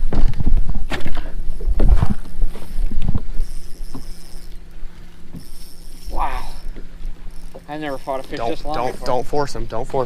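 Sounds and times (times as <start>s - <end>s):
knocks and bumps on a boat: 0.0s - 2.4s
low steady hum: 0.0s - 10.0s.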